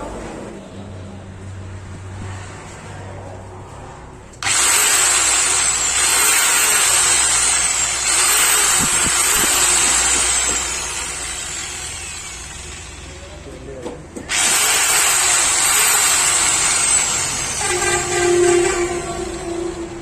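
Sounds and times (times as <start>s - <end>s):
angle grinder whining: 4.4s - 13.4s, 14.2s - 20.0s.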